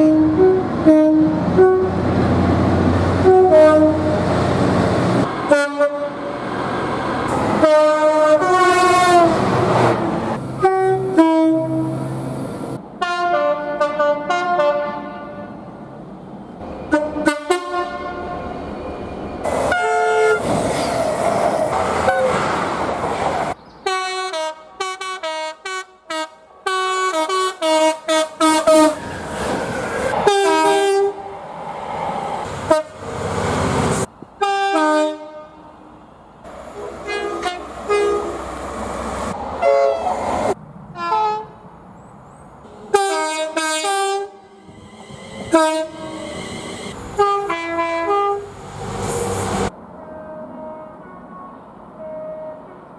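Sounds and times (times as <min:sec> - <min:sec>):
train horn chords: 0:00.0 - 0:02.0, 0:03.2 - 0:04.3, 0:05.5 - 0:06.4, 0:07.5 - 0:12.1, 0:13.0 - 0:15.6, 0:16.9 - 0:18.4, 0:19.7 - 0:20.4, 0:23.8 - 0:29.0, 0:30.2 - 0:31.3, 0:32.7 - 0:33.0, 0:34.4 - 0:35.7, 0:36.8 - 0:38.4, 0:41.0 - 0:41.6, 0:42.7 - 0:44.8, 0:45.4 - 0:46.4, 0:47.2 - 0:48.5, 0:50.0 - 0:52.8
passing train: 0:00.0 - 0:52.9.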